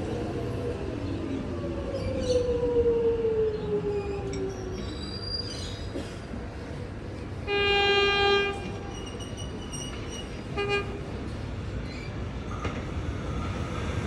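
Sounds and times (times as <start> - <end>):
train passing rumble: 0.0 - 14.0
train horn: 7.5 - 8.9, 10.6 - 11.0.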